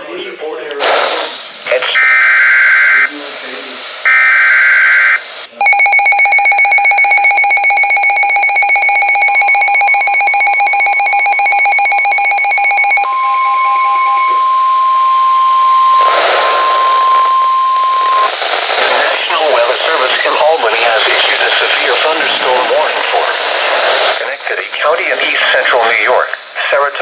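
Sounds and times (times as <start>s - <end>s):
radio static: 0.8s - 13.0s, 15.9s - 27.0s
steady alarm tone: 4.1s - 18.4s
rapid repeating beeps: 5.6s - 13.1s.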